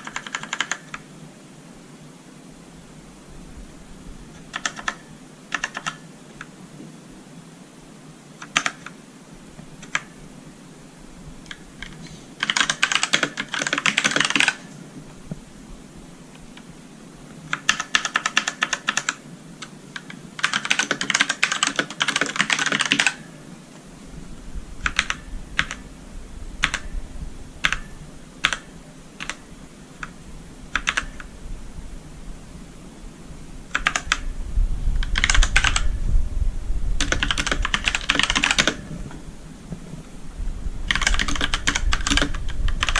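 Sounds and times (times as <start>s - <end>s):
mechanical keyboard typing: 0.0s - 1.0s, 4.3s - 6.0s, 8.4s - 8.9s, 9.8s - 10.1s, 11.5s - 14.7s, 17.5s - 19.2s, 20.4s - 23.2s, 24.8s - 25.8s, 27.6s - 29.4s, 30.8s - 31.2s, 35.2s - 35.9s, 37.0s - 38.9s, 40.5s - 42.9s.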